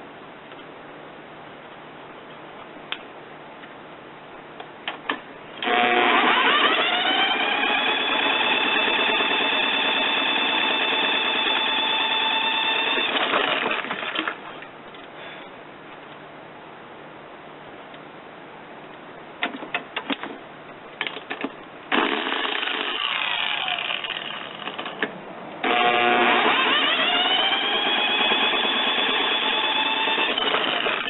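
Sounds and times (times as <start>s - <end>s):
power drill whining: 5.6s - 14.4s, 21.9s - 25.0s, 25.6s - 31.0s.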